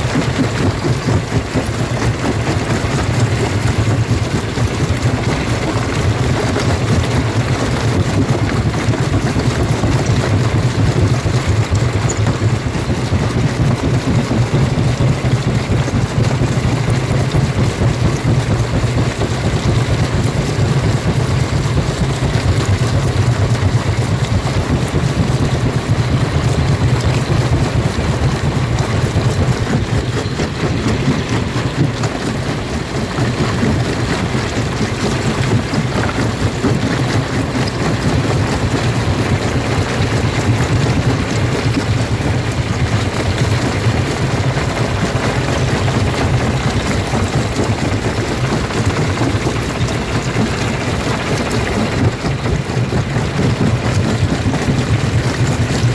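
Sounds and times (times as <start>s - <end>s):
rock crusher rumbling: 0.0s - 55.9s.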